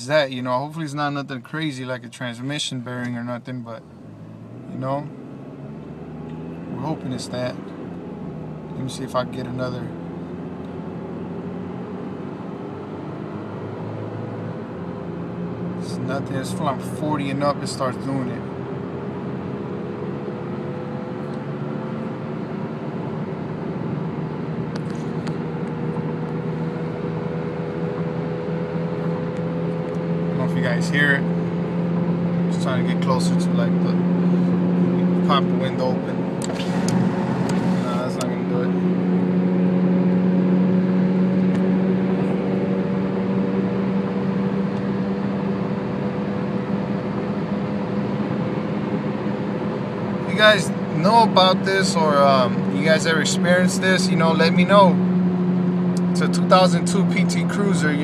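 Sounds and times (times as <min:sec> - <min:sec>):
road noise inside car: 0:00.0 - 0:58.0
tyre and road noise: 0:29.0 - 0:45.0.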